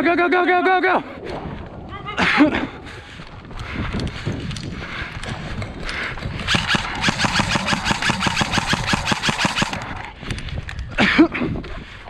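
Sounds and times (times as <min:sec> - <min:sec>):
airsoft gun full-auto rattle: 0:06.4 - 0:10.0.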